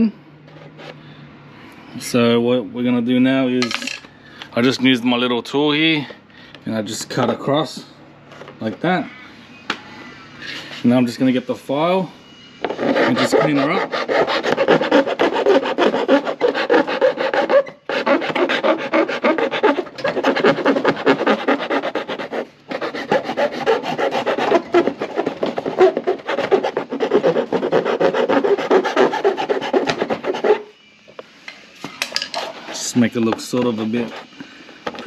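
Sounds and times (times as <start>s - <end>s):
hand file rasping on plastic: 12.6s - 30.6s.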